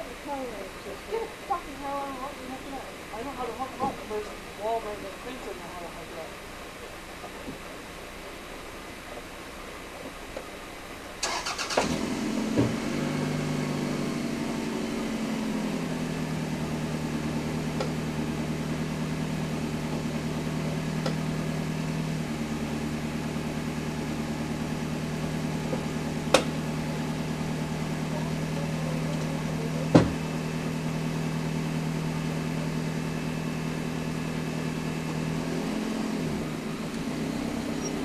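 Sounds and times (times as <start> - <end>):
car engine idling: 0.0 - 38.0
car engine cranking: 11.2 - 38.0.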